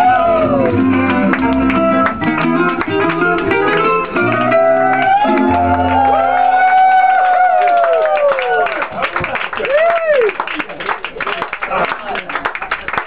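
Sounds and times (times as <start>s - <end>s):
acoustic guitar plucking: 0.0s - 6.1s.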